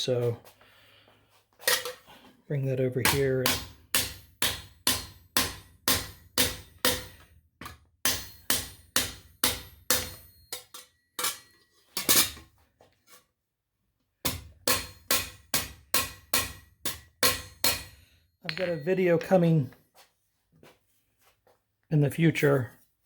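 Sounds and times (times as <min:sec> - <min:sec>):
hammer striking metal on anvil: 0:03.0 - 0:11.5, 0:14.3 - 0:19.4.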